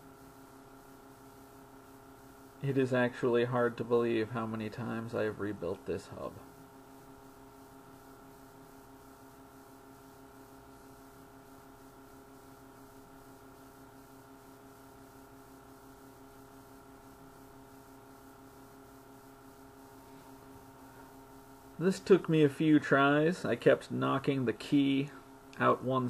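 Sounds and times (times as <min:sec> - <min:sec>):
faint electrical hum: 0:00.0 - 0:26.0.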